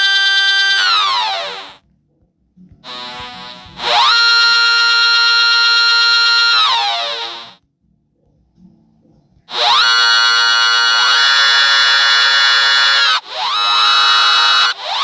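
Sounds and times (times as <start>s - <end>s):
buzzy synthesizer tones gliding: 0.0s - 1.8s, 2.9s - 7.6s, 9.5s - 15.0s.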